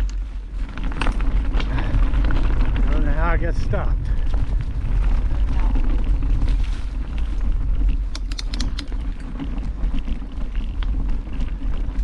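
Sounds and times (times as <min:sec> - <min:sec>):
wind buffeting microphone: 0:00.0 - 0:12.0
sharp clicks and rattles: 0:08.0 - 0:11.0.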